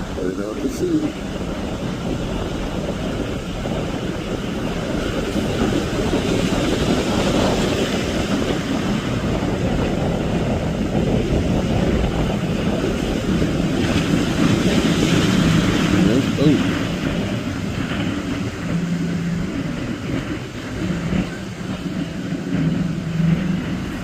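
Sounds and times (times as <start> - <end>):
motorboat engine running: 0.0 - 24.0
wind buffeting microphone: 0.0 - 24.0.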